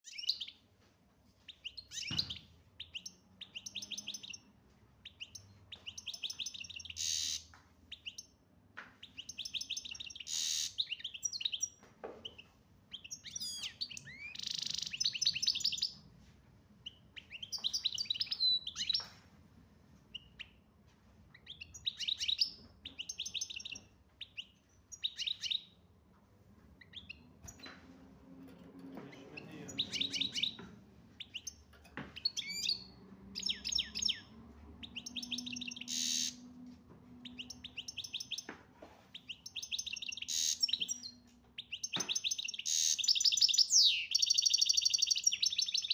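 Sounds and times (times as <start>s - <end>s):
goldfinch twittering and trilling: 29.4s - 30.6s.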